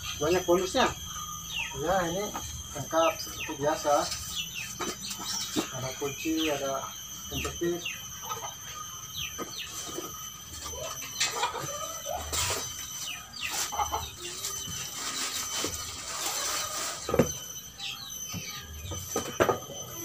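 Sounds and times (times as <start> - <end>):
chickens clucking and squawking: 7.4 - 20.0.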